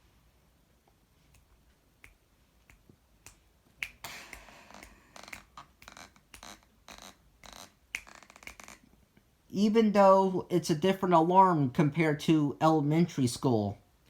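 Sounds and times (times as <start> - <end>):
sharp clicks and taps: 1.3 - 8.8.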